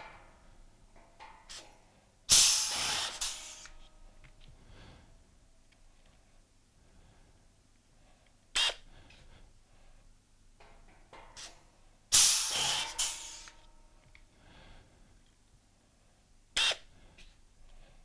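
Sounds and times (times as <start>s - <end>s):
compressed air hiss: 1.5s - 3.9s, 12.1s - 13.6s.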